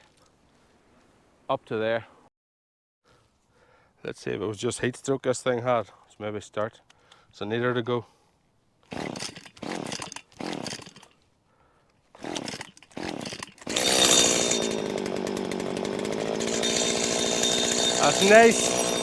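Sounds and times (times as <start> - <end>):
recoil starter pulls: 8.9 - 11.1, 12.2 - 19.0
strimmer engine running: 12.2 - 19.0.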